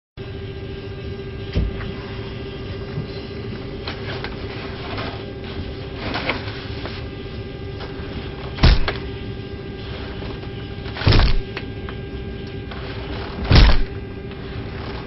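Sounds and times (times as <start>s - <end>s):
steady mechanical hum: 0.2s - 15.0s
heavy thump: 8.6s - 9.0s, 11.0s - 11.5s, 13.4s - 13.9s.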